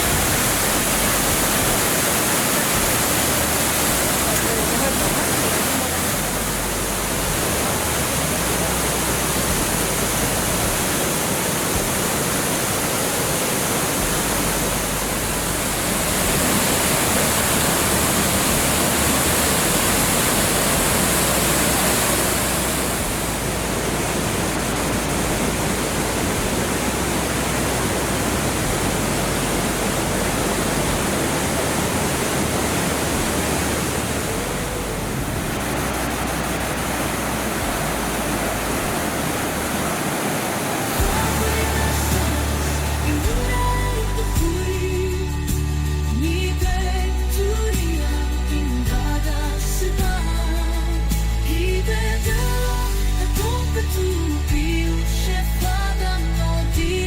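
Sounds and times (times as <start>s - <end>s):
waterfall rushing: 0.0s - 45.3s.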